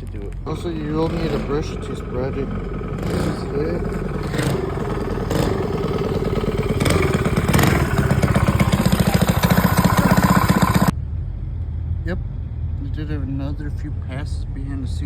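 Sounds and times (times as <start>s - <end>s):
engine running with pulsing beat: 0.0s - 11.0s.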